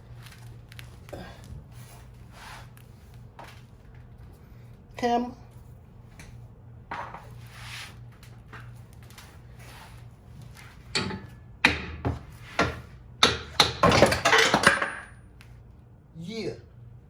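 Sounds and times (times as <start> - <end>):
hammer striking metal: 11.0 - 15.1.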